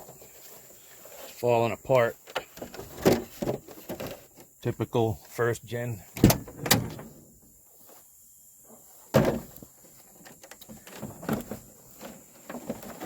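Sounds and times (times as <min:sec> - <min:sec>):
plastic door panel clattering: 0:06.2 - 0:07.2.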